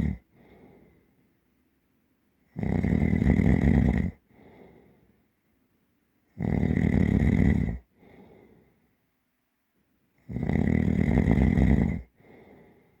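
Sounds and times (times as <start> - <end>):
person snoring: 0.0 - 0.2, 2.6 - 4.2, 6.4 - 7.9, 10.3 - 12.5
soft breath: 0.0 - 1.4, 4.1 - 5.4, 7.8 - 9.0, 12.0 - 13.0.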